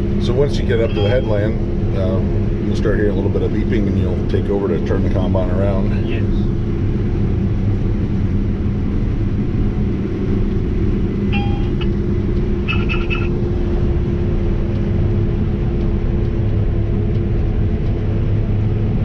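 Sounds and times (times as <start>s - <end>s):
combine engine and machinery drone: 0.0s - 19.0s
short electronic beeps: 0.8s - 1.4s, 11.3s - 11.9s, 12.6s - 13.3s.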